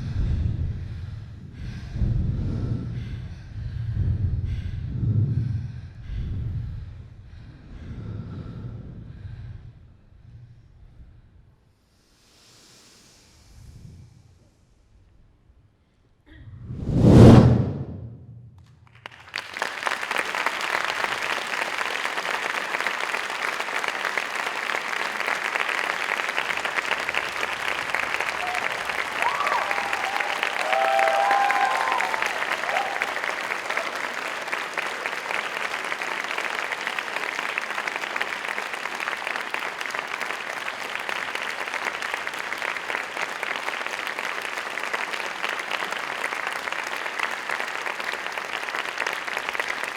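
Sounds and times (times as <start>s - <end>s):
audience applauding: 18.9s - 49.9s
brief cheers: 27.8s - 35.4s.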